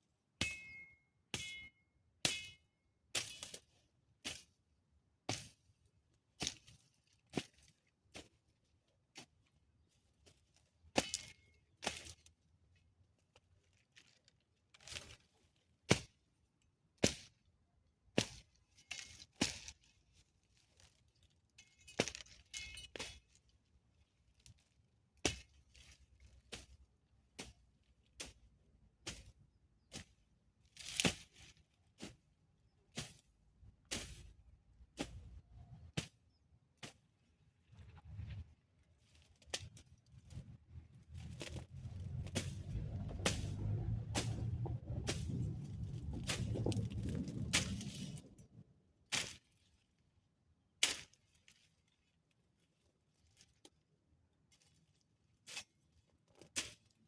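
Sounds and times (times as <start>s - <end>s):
garden tool cutting vegetation: 18.1s - 21.1s, 24.3s - 37.2s, 39.1s - 48.2s.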